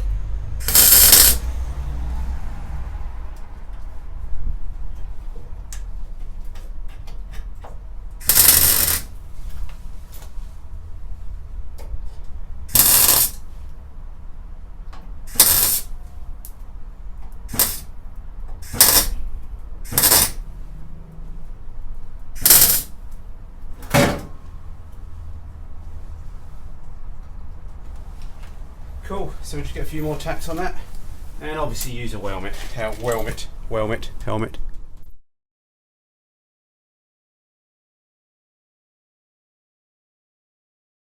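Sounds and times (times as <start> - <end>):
welder crackling bursts: 0.6 - 1.6, 8.2 - 9.2, 12.7 - 13.5, 15.2 - 16.0, 17.4 - 18.0, 18.6 - 20.4, 22.4 - 23.1.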